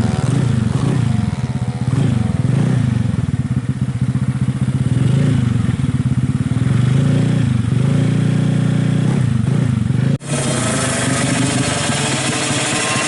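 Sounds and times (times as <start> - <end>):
harsher engine sound: 0.0 - 13.0
loud motorcycle engine running: 0.0 - 13.0.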